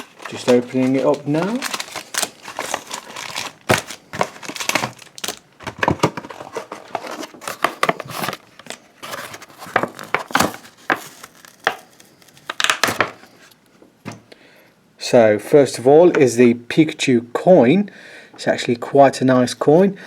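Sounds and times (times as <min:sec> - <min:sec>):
blister pack tearing open: 0:00.0 - 0:13.2.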